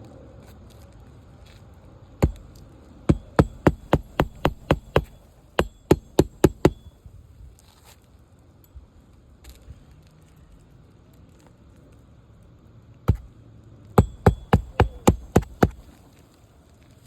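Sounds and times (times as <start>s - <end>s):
hammer striking roofing nail: 2.2s - 6.9s, 13.1s - 13.3s, 14.0s - 15.8s.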